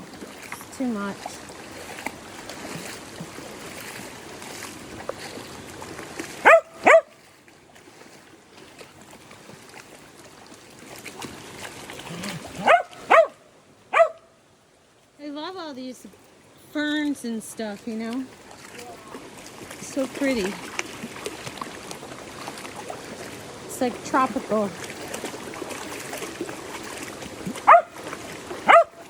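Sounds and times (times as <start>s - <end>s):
dog barking: 6.4s - 7.2s, 12.6s - 14.3s, 27.6s - 28.0s, 28.6s - 29.0s.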